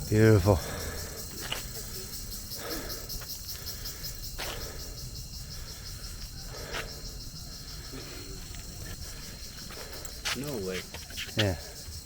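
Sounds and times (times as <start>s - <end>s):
insects chirping: 0.0s - 12.0s.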